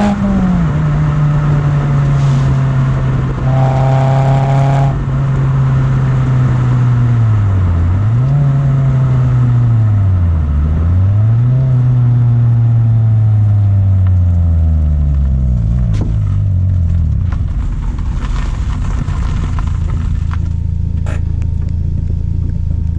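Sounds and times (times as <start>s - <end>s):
car engine under load: 0.0s - 22.9s.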